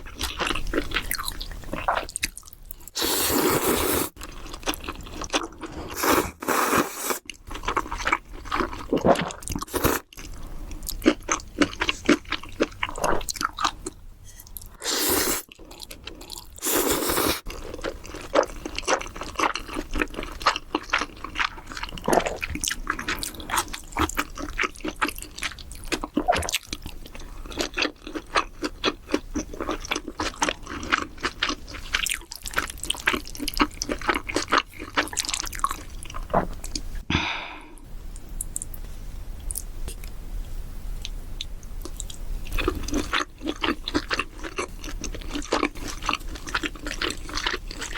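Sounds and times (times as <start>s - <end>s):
wet chewing and crunching: 0.0s - 3.0s, 4.1s - 6.1s, 7.2s - 14.8s, 15.5s - 36.9s, 41.0s - 47.9s
mouth clicks and smacks: 38.4s - 38.8s.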